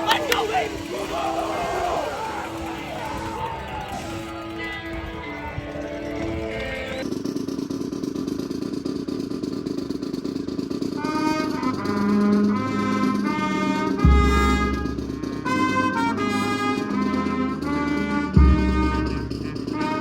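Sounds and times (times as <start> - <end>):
brass horns playing phrases: 11.0 - 20.0
steady low rumble: 12.0 - 20.0.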